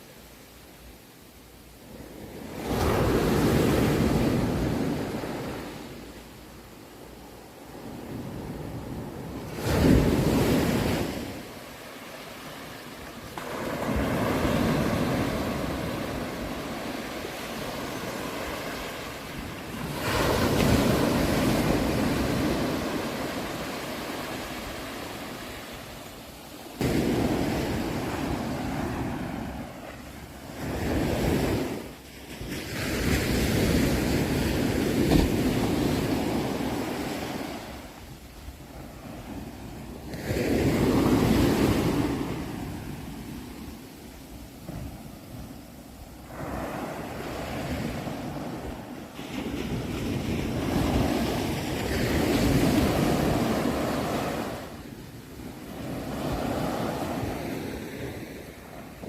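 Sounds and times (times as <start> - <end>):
waves breaking on shore: 0.0 - 59.0.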